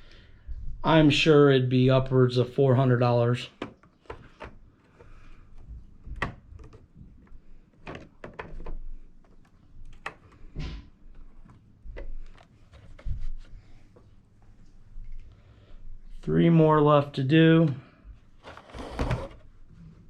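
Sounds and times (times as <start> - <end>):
plastic clicks and knocks: 3.6 - 13.1.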